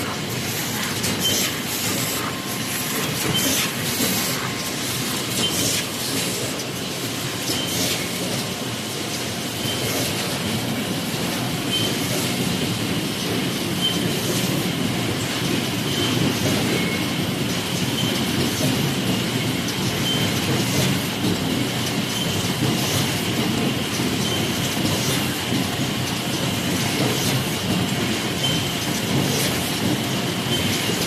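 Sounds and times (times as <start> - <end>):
machines clattering: 0.0 - 31.0
press squeaking: 11.7 - 12.0.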